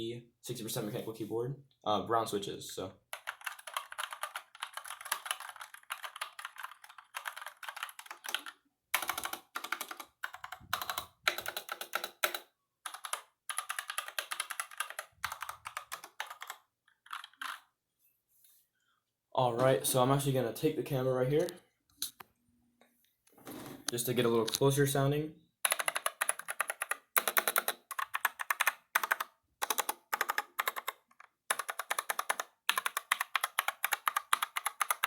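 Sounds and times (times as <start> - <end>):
mechanical keyboard typing: 3.1 - 17.7, 25.6 - 35.0.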